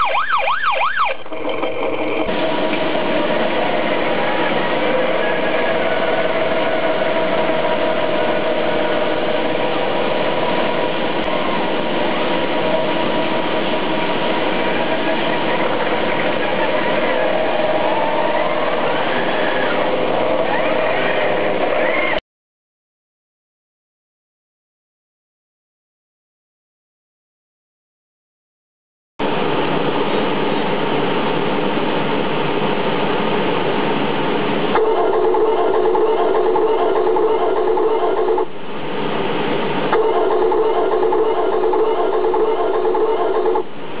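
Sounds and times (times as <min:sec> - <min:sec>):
toy vehicle engine whine: 0:14.6 - 0:22.2.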